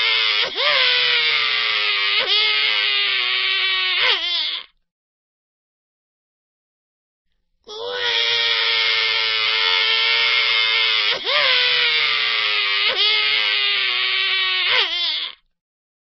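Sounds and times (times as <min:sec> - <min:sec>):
cartoon crying wail: 0:00.0 - 0:04.7, 0:07.7 - 0:15.4.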